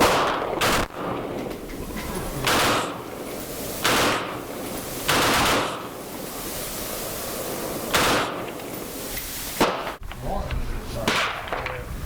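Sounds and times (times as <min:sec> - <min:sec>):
gunshots with echo: 0:00.0 - 0:01.4, 0:02.4 - 0:06.0, 0:07.9 - 0:08.6.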